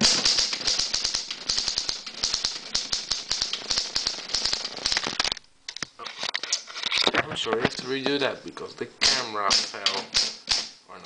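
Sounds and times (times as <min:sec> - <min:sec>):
typewriter typing: 0:00.0 - 0:05.4, 0:09.0 - 0:10.7.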